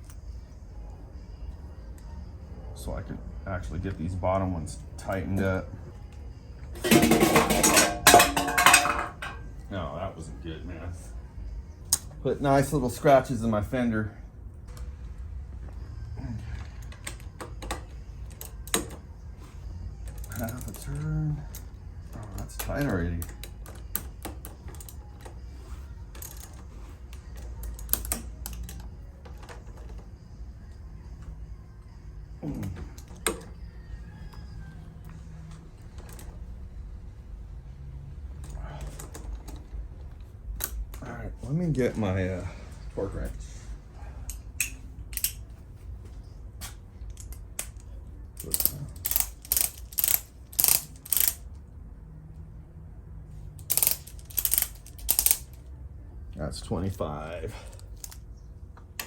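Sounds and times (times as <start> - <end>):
wrench clicking on bolts: 16.7 - 19.0, 20.0 - 25.4, 26.1 - 29.9, 40.5 - 41.1, 44.3 - 45.4, 47.1 - 51.5, 53.6 - 55.6.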